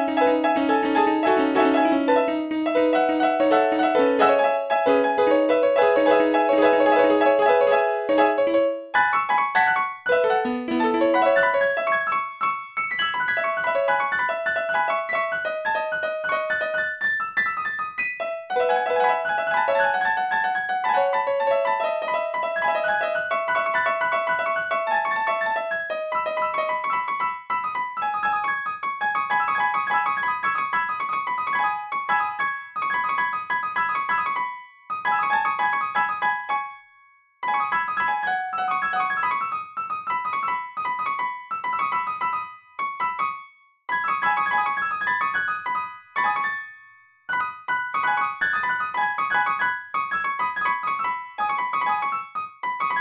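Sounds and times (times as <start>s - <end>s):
piano music: 0.0s - 27.3s, 43.9s - 53.0s.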